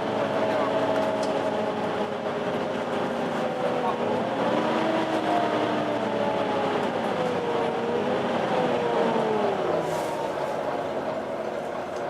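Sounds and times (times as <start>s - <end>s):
bus engine whine: 0.0s - 12.0s.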